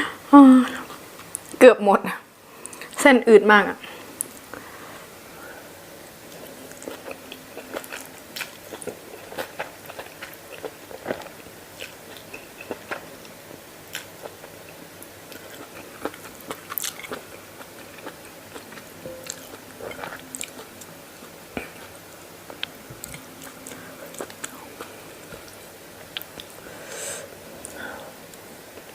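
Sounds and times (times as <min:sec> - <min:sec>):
person chewing crunchy food: 0:06.3 - 0:26.6.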